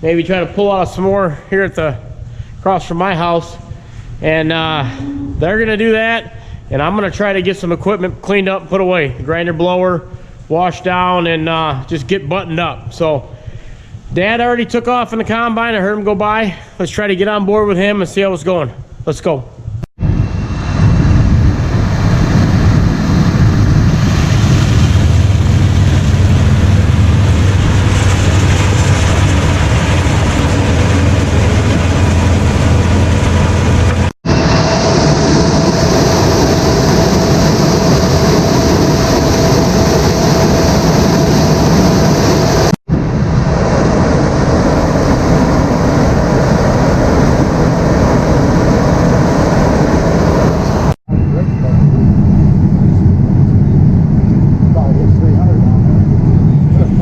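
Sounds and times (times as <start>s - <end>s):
steady machine whine: 2.0s - 5.8s, 20.0s - 57.0s
farm machinery engine drone: 20.0s - 57.0s.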